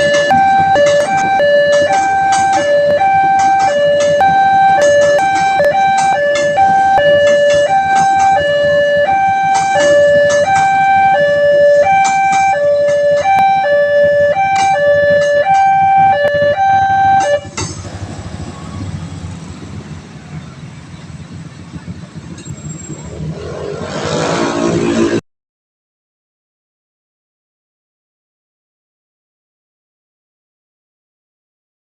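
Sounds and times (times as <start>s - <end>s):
level crossing two-tone alarm: 0.0s - 17.6s
road vehicles rumbling: 0.0s - 25.2s.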